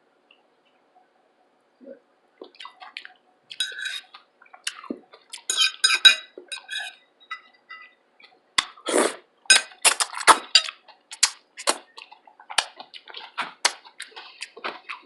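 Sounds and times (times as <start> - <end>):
wet chewing and mouth clicks: 2.4 - 5.5, 8.2 - 15.0.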